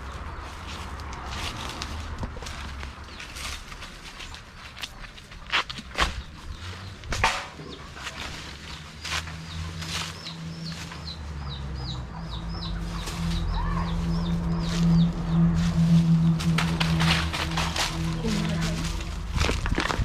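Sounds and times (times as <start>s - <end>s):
bird chirping: 5.8s - 19.3s.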